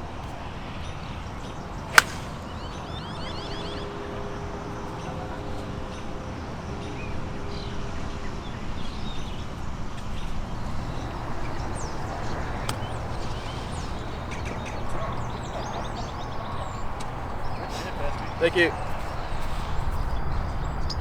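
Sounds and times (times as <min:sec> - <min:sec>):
sharp click: 0:02.0 - 0:02.2
small birds chirping: 0:10.8 - 0:21.0.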